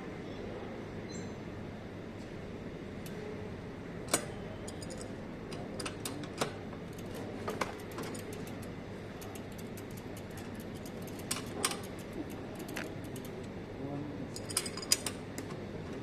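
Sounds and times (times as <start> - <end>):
bicycle chain clicking: 5.8 - 13.5.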